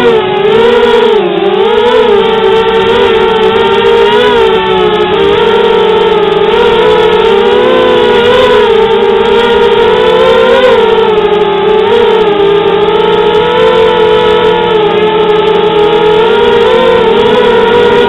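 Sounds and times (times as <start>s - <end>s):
quadcopter motors whining: 0.0s - 18.0s.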